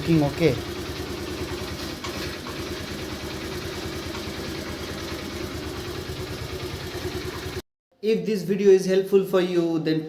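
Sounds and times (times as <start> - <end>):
scooter engine idling: 0.0 - 7.6.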